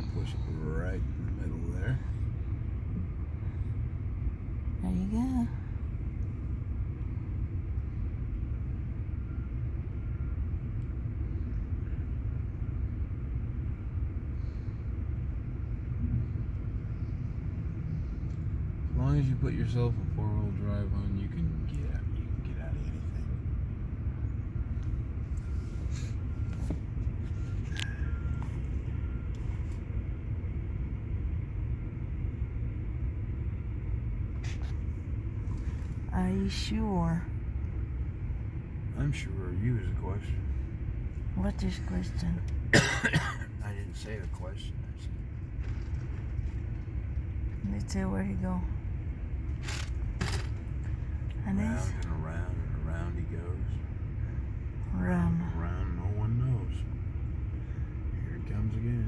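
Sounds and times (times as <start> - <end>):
vehicle engine rumbling: 0.0 - 59.0.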